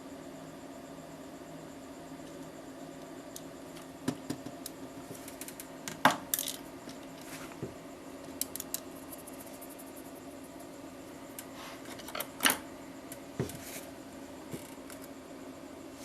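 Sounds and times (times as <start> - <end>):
faint steady hum: 0.0 - 16.0
small parts and tools clinking: 5.2 - 6.7.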